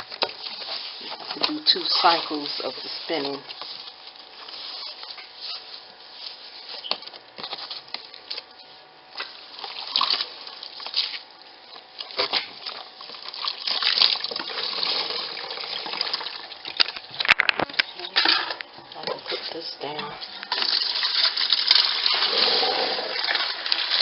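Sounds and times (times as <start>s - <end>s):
water splashing and dripping: 9.2s - 16.8s.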